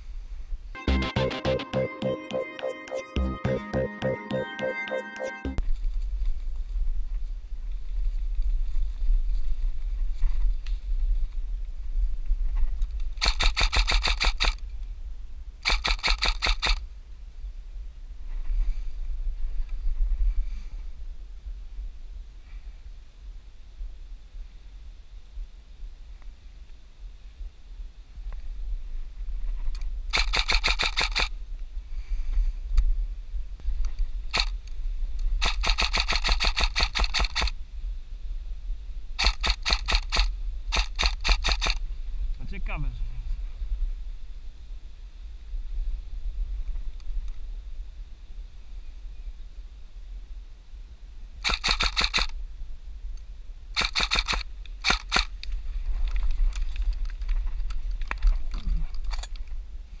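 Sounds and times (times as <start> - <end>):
wind on microphone: 5.6 - 60.0
airsoft gun firing bursts: 13.2 - 14.6, 15.6 - 16.8, 30.1 - 31.3, 34.3 - 34.5, 35.4 - 37.5, 39.2 - 41.8, 51.4 - 52.3, 53.8 - 55.3.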